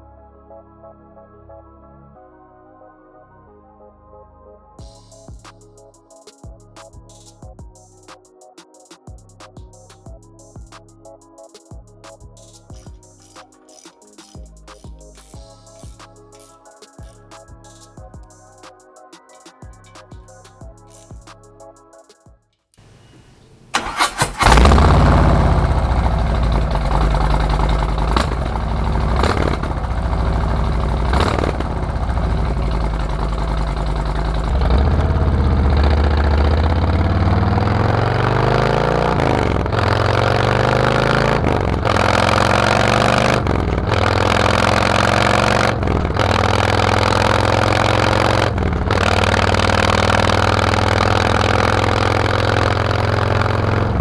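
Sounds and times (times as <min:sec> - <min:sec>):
motorcycle engine revving: 0:22.8 - 0:54.0.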